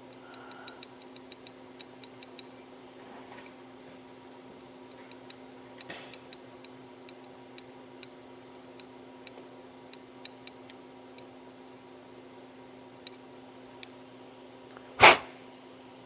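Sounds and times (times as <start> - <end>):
faint light ticking: 0.0 - 2.6
steady low hum: 0.0 - 16.0.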